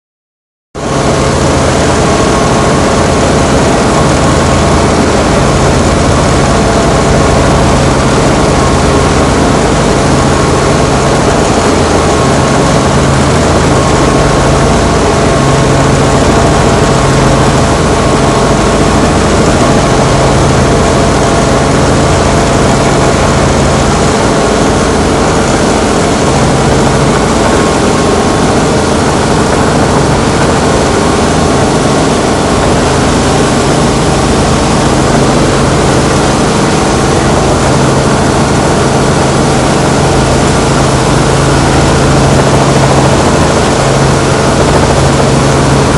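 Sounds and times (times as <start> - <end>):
helicopter engine and rotors: 0.8 - 45.9.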